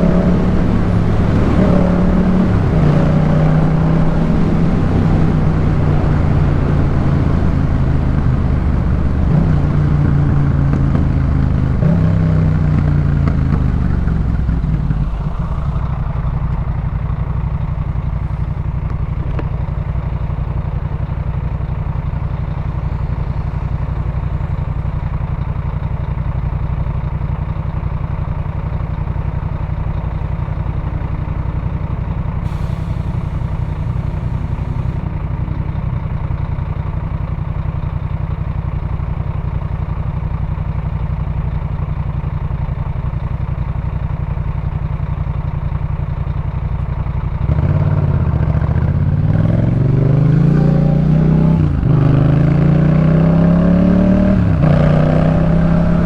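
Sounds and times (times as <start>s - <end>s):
motorcycle engine idling and revving: 0.0s - 56.0s
gear change: 32.5s - 35.3s.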